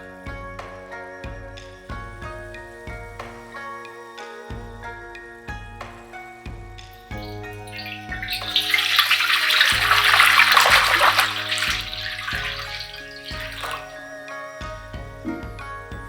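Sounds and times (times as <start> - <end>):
background music: 0.0 - 16.0
water pouring: 7.0 - 14.0.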